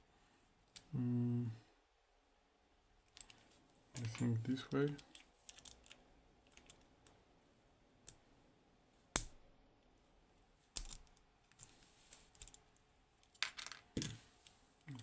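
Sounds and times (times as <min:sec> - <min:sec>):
metal lock parts clicking and tapping: 0:04.0 - 0:06.8.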